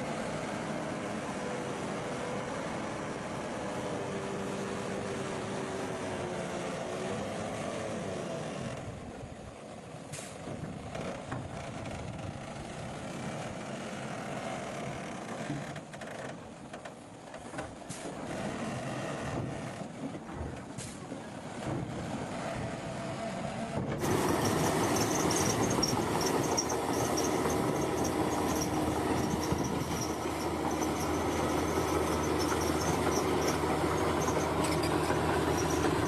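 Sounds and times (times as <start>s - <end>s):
bulldozer diesel engine running: 19.4s - 36.0s.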